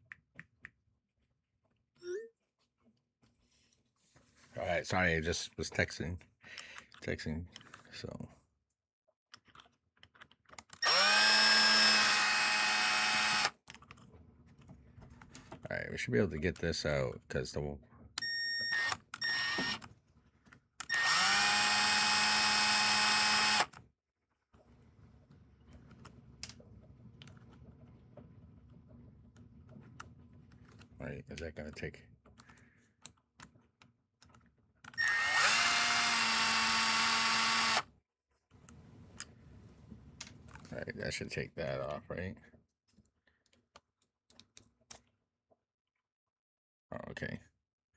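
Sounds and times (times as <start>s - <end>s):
electric drill running: 10.8s - 13.6s, 18.6s - 19.9s, 20.8s - 23.8s, 35.0s - 37.8s.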